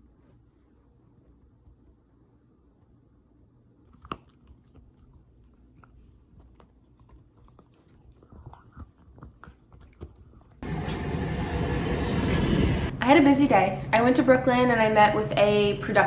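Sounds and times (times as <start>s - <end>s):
chewing and biting: 3.8s - 10.6s.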